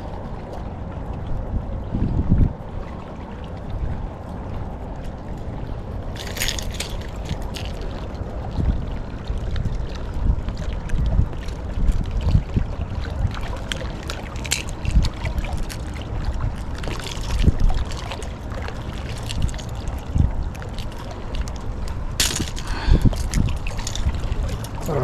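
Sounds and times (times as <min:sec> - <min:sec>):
small water sounds: 0:00.0 - 0:25.0
wind rumbling on microphone: 0:00.0 - 0:25.0
handling clicks and knocks: 0:06.2 - 0:07.8, 0:22.2 - 0:25.0.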